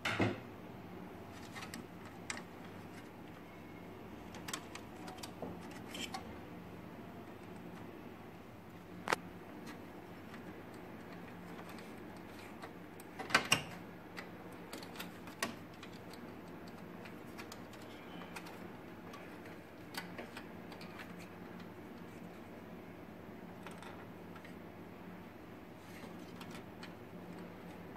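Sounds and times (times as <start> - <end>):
small parts clicking and tapping: 9.0 - 22.4.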